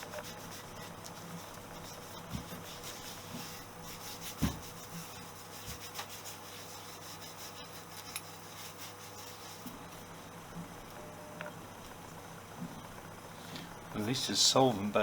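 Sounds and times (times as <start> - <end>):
hand rubbing metal: 0.0 - 10.0
steady low hum: 0.0 - 15.0.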